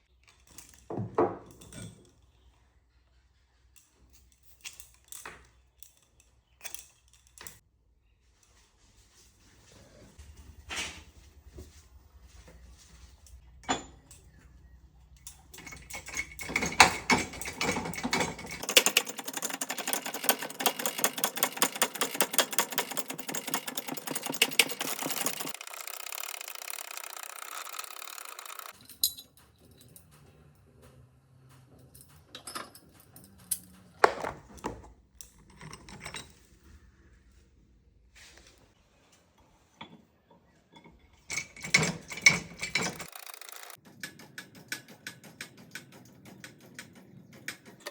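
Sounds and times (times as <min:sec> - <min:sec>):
metallic clicking and scraping: 0:15.2 - 0:36.4, 0:40.8 - 0:47.9
metal rasping: 0:15.6 - 0:28.8.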